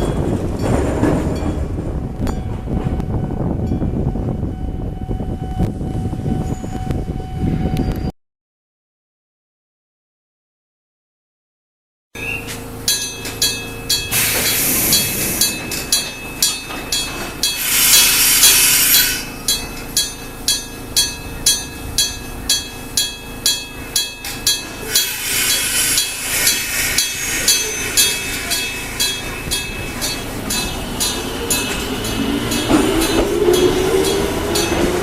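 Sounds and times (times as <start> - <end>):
rushing train noise: 0.0 - 8.1, 12.2 - 35.0
level crossing gong striking: 12.8 - 35.0.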